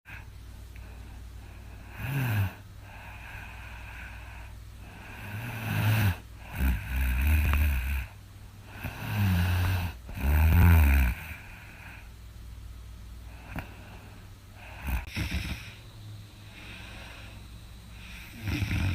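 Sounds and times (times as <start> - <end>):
steady low hum: 0.1 - 18.9
person snoring loudly: 1.9 - 4.2, 4.8 - 11.5, 14.6 - 15.8, 18.0 - 18.9.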